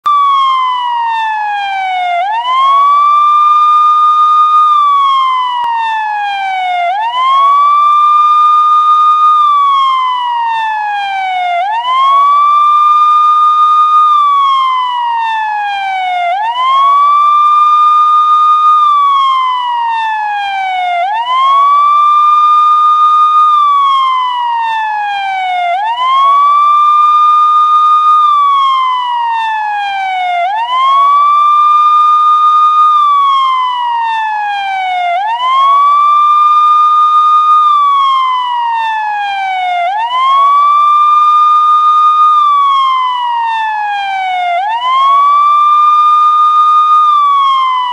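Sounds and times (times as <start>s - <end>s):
police siren wailing: 0.0s - 47.9s.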